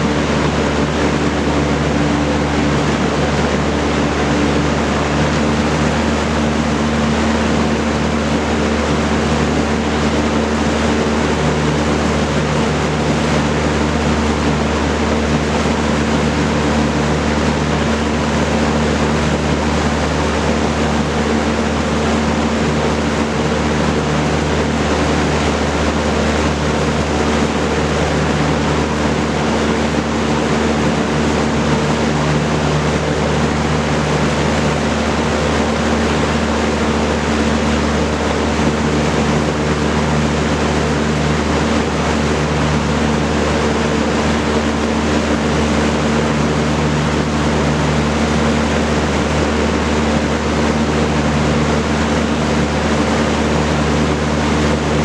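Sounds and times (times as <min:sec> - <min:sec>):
fan air rushing: 0:00.0 - 0:55.0
low motor hum: 0:00.0 - 0:55.0.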